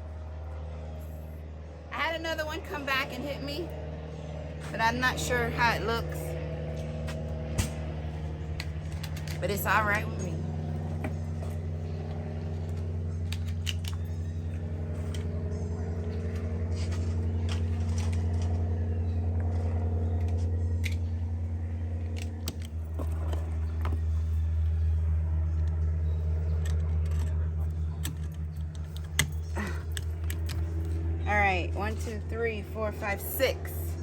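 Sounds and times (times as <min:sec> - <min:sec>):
low machine hum: 0:00.0 - 0:34.0
metallic clicks of gun parts: 0:13.3 - 0:14.2.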